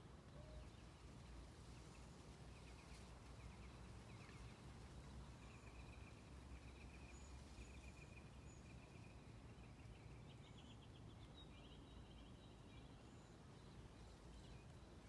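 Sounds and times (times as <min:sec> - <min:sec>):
low steady background rumble: 0:00.0 - 0:15.0.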